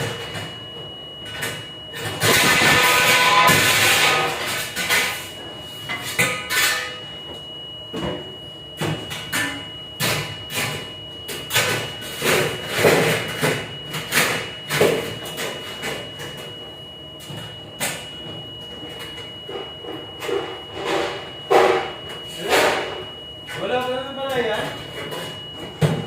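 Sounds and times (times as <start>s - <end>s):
thin high whine: 0.0s - 26.0s
dishes and racks clattering: 1.3s - 5.2s, 5.9s - 7.0s.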